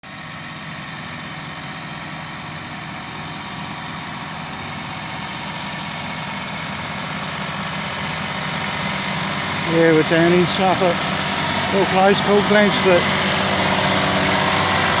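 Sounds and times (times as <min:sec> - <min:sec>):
tractor diesel engine running: 0:00.1 - 0:15.0.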